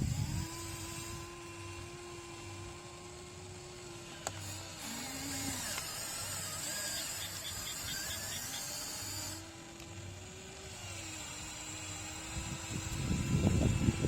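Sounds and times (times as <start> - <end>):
small electric motors whining: 0.0 - 14.0
high hissing whine: 3.7 - 9.6.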